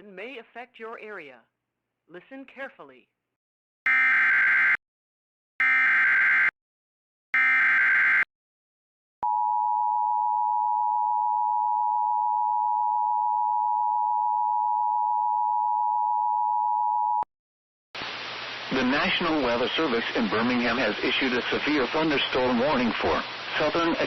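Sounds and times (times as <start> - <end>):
two-tone emergency alert tone: 3.9 - 4.8, 5.6 - 6.5, 7.4 - 8.3, 9.2 - 17.3.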